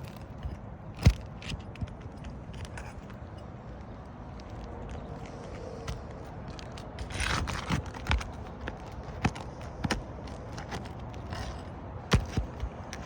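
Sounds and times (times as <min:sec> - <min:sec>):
scrape on roof shingle: 0:05.3 - 0:13.0.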